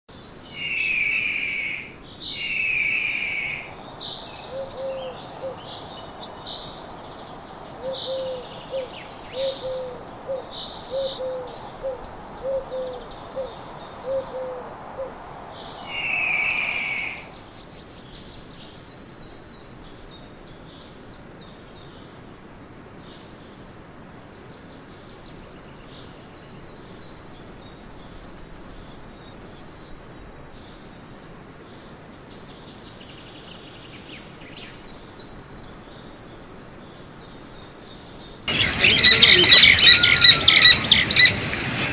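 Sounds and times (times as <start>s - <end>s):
high bird chirps: 0.5s - 3.7s, 15.8s - 17.3s, 38.5s - 41.9s
loud long bird calls: 0.5s - 5.7s, 15.6s - 17.5s, 38.5s - 41.9s
faint hiss: 15.2s - 17.7s.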